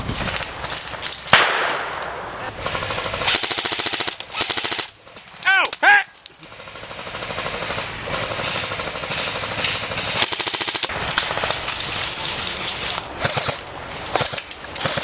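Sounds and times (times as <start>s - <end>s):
airsoft gun firing full auto: 1.3s - 4.9s, 6.5s - 11.6s, 13.2s - 15.0s.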